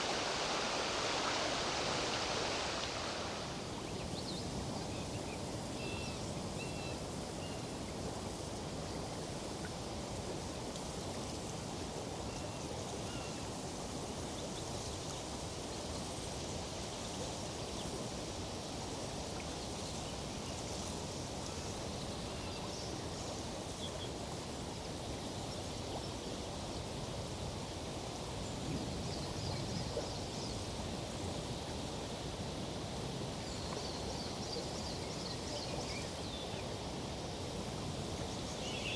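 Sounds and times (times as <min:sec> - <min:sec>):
foliage rustling in breeze: 0:00.0 - 0:04.2
river flowing: 0:00.0 - 0:14.2.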